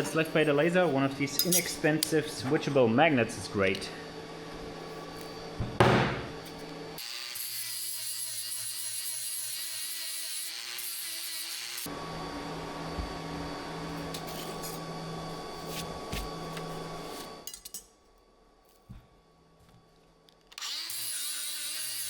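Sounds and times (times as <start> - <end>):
angle grinder grinding steel: 7.0 - 11.9, 20.6 - 22.0.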